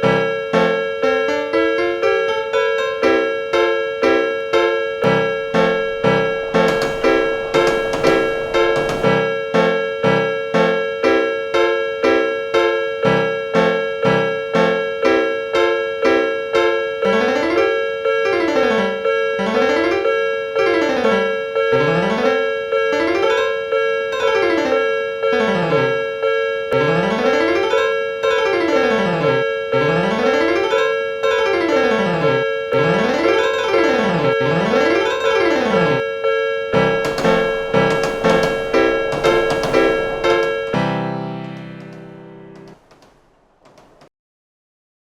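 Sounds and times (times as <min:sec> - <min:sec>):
piano scales: 0:00.0 - 0:36.2, 0:36.8 - 0:44.1
crossing bell clanging: 0:05.0 - 0:09.2, 0:36.8 - 0:40.8.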